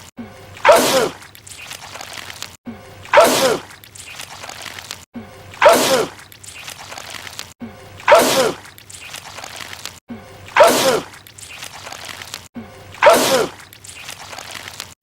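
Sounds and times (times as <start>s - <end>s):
man sneezing: 8.1s - 8.6s, 10.6s - 11.1s.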